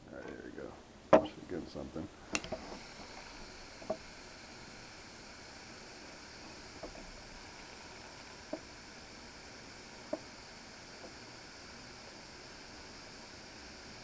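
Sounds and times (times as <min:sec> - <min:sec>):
butane torch hissing: 0:00.0 - 0:14.0.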